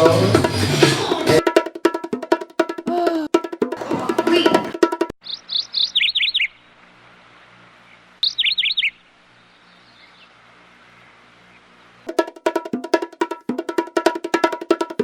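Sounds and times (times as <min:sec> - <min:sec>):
faint outdoor background: 0:00.0 - 0:15.0
bird chirping: 0:03.9 - 0:12.1.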